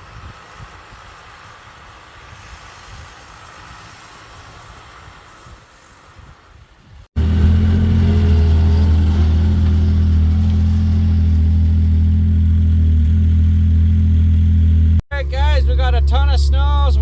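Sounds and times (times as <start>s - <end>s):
snowmobile engine idling: 7.2s - 17.0s.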